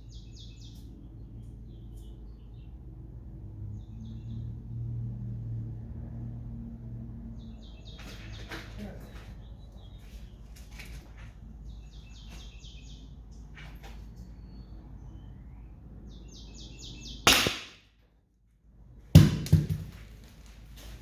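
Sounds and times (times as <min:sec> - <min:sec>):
birds chirping: 0:00.0 - 0:02.8, 0:07.3 - 0:17.8.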